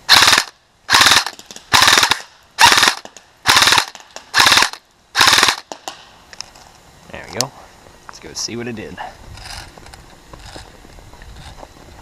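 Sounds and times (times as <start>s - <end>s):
airsoft gun firing bursts: 0.1s - 6.0s.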